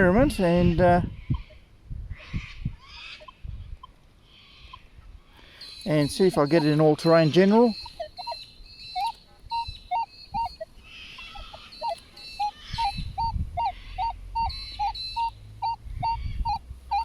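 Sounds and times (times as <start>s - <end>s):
metal detector short beeps: 5.7s - 17.0s.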